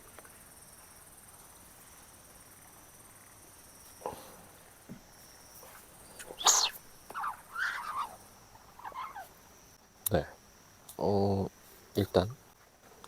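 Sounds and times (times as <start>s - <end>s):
insects chirping: 0.0s - 13.0s.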